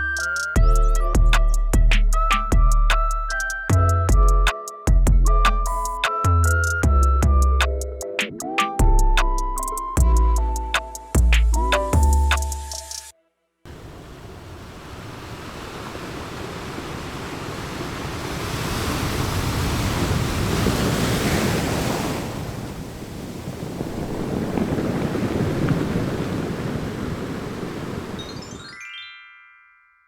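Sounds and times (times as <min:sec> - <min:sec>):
sea waves breaking on shore: 0:13.7 - 0:28.6.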